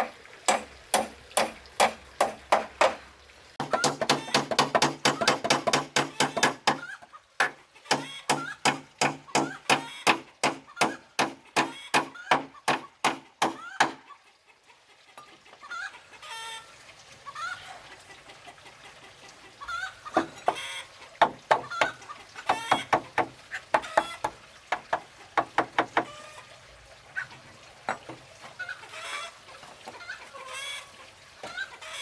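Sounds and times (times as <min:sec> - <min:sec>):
rapid striking on wood: 0:00.5 - 0:03.0, 0:03.6 - 0:06.8, 0:07.4 - 0:14.0
chickens clucking: 0:06.4 - 0:13.0, 0:13.6 - 0:24.3, 0:26.0 - 0:32.0.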